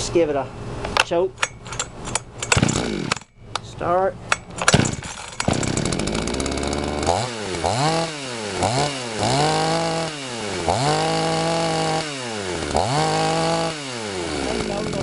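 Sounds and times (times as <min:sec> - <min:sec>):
chainsaw revving: 0:02.4 - 0:03.3, 0:04.6 - 0:15.0.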